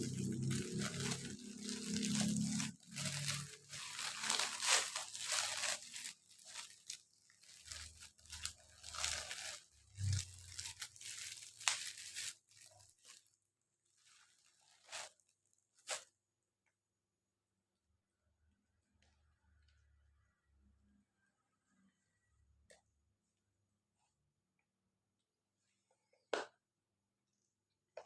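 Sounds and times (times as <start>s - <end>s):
packaging rustling and crinkling: 0.0s - 16.1s.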